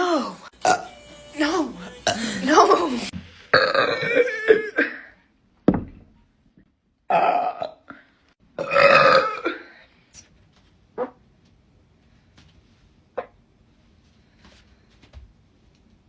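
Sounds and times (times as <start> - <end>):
woman burping: 0.6 - 0.9, 2.0 - 5.1, 7.1 - 8.0, 8.6 - 9.8.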